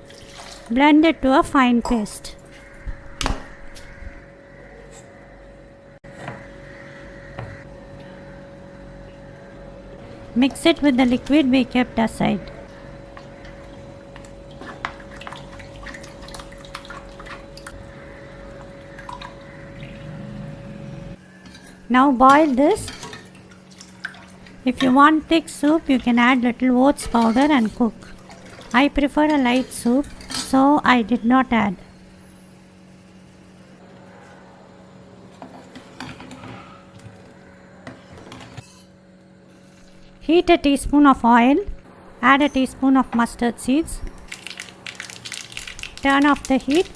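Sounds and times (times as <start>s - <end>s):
faint steady hum: 0.0s - 46.9s
liquid splashing and dripping: 13.2s - 17.8s, 18.6s - 20.2s, 23.1s - 24.6s, 27.2s - 28.8s, 44.2s - 46.9s.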